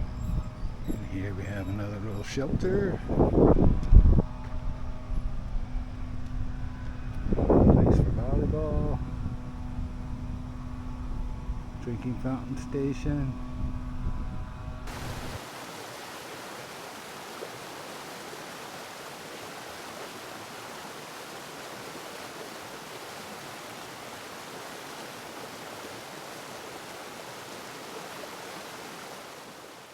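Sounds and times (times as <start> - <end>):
steady rushing noise: 13.1 - 16.6.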